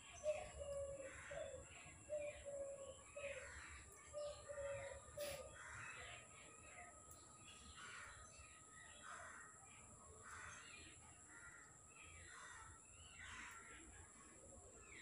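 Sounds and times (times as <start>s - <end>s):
crows cawing: 0.6s - 1.6s, 4.6s - 6.1s.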